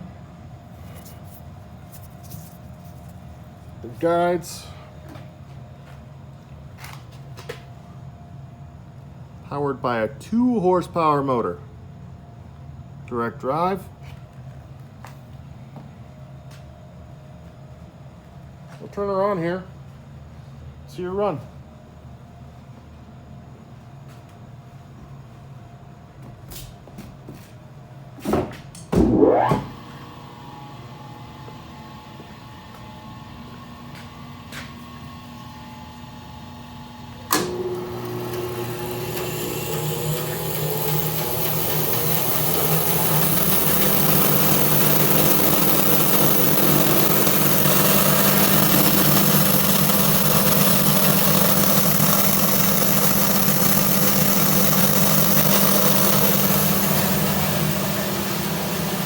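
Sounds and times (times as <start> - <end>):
bandsaw motor whining: 29.0 - 59.0.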